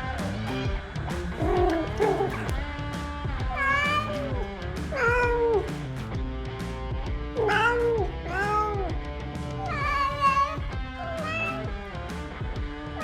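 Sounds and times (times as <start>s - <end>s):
background music: 0.0s - 13.0s
cat meowing: 3.5s - 5.7s, 7.4s - 9.0s, 9.6s - 11.7s.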